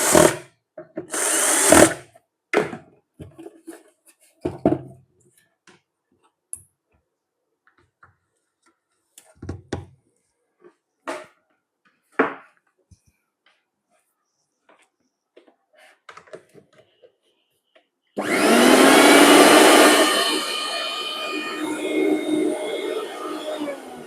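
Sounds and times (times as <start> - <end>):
small electric motor: 1.1 - 2.0, 18.2 - 24.0.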